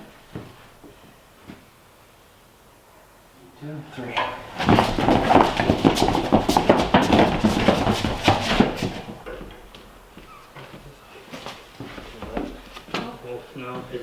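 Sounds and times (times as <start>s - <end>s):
heavy load knocking and scraping: 3.9s - 9.8s.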